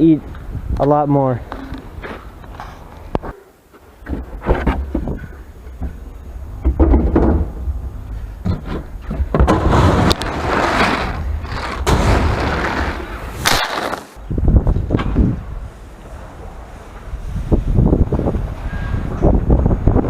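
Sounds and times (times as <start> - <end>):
wind buffeting microphone: 0.0 - 2.4, 14.2 - 20.0.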